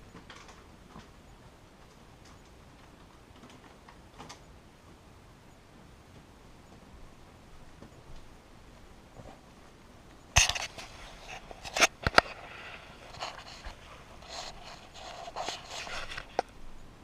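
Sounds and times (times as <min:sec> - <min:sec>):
scraping and rustling: 0:10.4 - 0:16.6.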